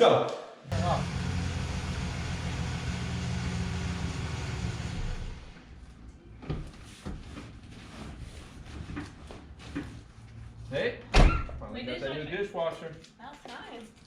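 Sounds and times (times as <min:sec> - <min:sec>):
vehicle engine humming: 0:00.7 - 0:06.0.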